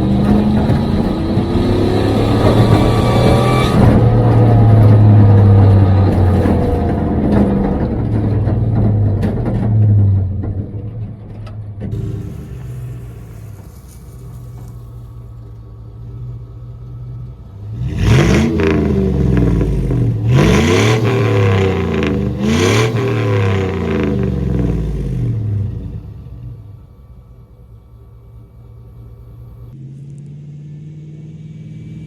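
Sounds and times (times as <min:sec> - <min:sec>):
engine idling and revving: 0:00.0 - 0:32.0.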